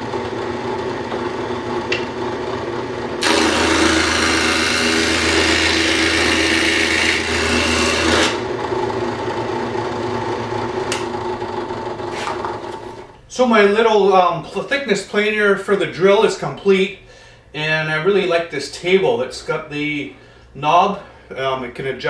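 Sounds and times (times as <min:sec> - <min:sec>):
drill press motor hum: 0:00.0 - 0:13.1
planer shaving wooden board: 0:03.1 - 0:08.5, 0:11.9 - 0:13.0.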